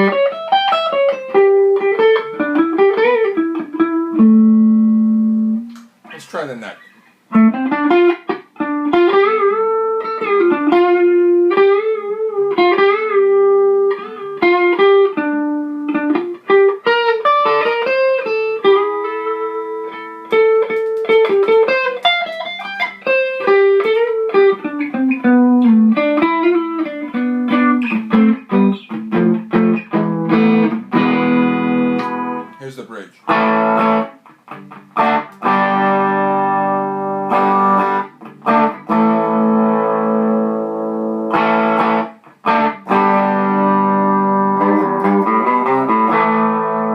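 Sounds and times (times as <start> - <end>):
electric guitar melodic lines: 0.0 - 46.9
ringing guitar chord: 30.4 - 32.7.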